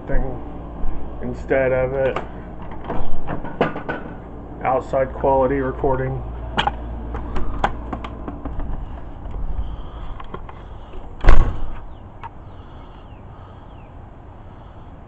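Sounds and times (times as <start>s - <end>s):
low rumble: 0.0s - 11.9s
door shutting with a thud: 2.6s - 4.2s, 11.2s - 11.8s.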